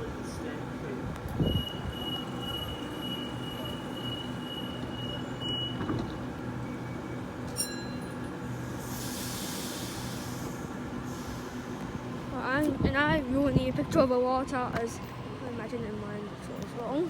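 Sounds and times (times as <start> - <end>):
air hiss: 8.8 - 11.8.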